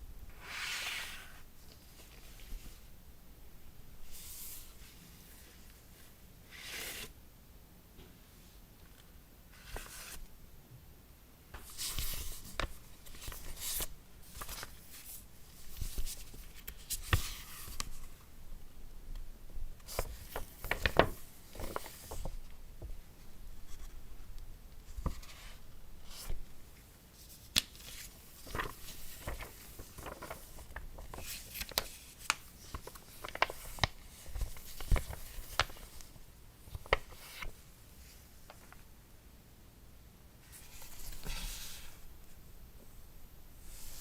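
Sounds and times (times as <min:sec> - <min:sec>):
rustling and scraping: 0:28.0 - 0:31.8.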